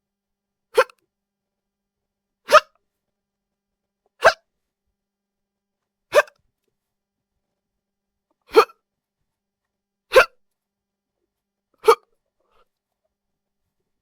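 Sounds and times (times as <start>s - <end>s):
person hiccuping: 0.8s - 1.0s, 8.5s - 8.8s, 10.1s - 10.4s, 11.8s - 12.1s.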